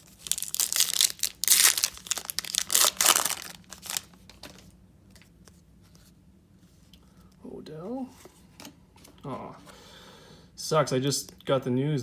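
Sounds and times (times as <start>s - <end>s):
foil wrapper crinkling and tearing: 0.0s - 4.6s.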